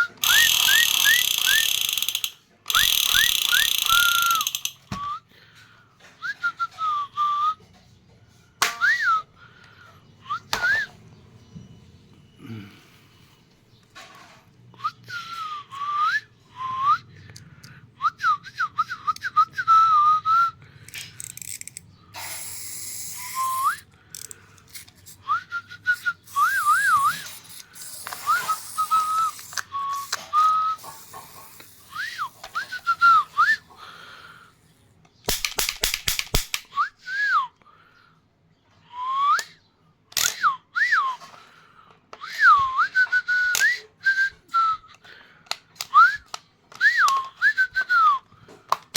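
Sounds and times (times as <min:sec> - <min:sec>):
sliding whistled notes: 0:00.0 - 0:05.2, 0:10.2 - 0:11.8, 0:23.2 - 0:23.9, 0:25.2 - 0:33.7, 0:42.2 - 0:44.9, 0:45.9 - 0:48.2
run of sharp clicks: 0:00.2 - 0:04.9, 0:35.2 - 0:36.8.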